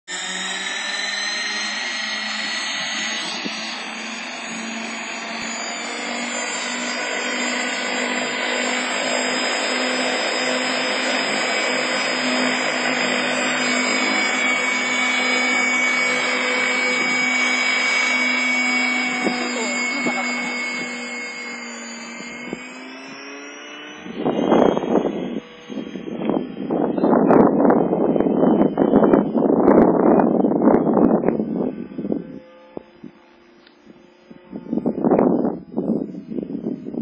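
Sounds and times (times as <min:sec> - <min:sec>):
electric model mechanical whine: 0:00.1 - 0:37.0.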